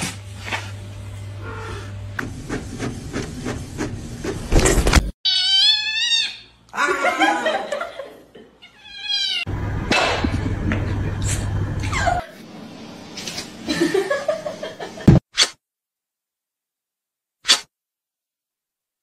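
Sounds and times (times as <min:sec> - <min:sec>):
cat meowing: 0:05.2 - 0:06.5, 0:08.6 - 0:09.5
steady hum: 0:09.5 - 0:15.0.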